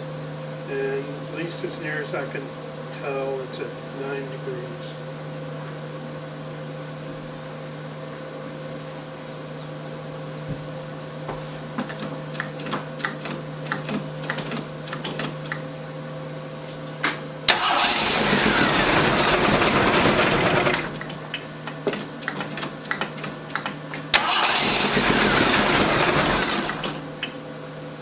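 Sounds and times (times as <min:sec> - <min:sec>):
engine backfiring: 0:17.5 - 0:21.3, 0:24.1 - 0:27.3
engine starter cranking: 0:17.5 - 0:27.4.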